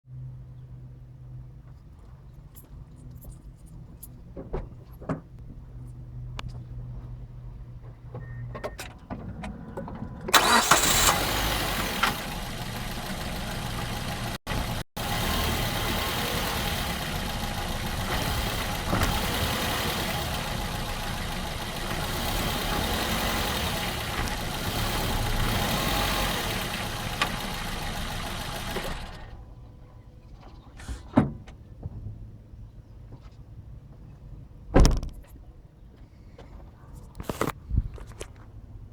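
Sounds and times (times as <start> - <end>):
car engine running: 10.3 - 29.4.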